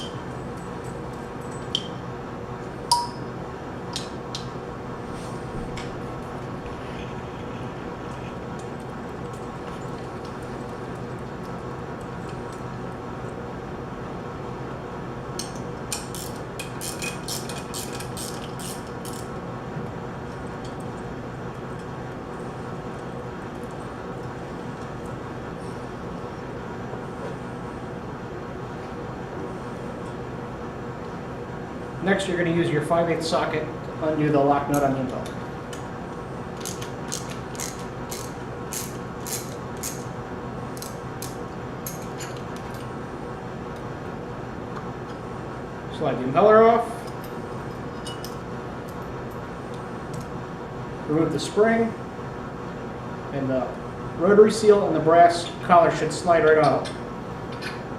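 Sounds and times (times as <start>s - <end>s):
steady hum: 0.0s - 57.9s
socket wrench ratcheting: 36.6s - 40.0s.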